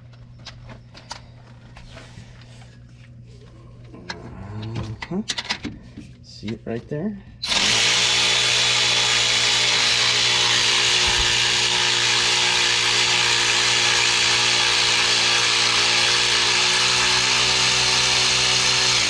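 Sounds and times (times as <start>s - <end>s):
power tool motor whine: 7.4s - 19.0s.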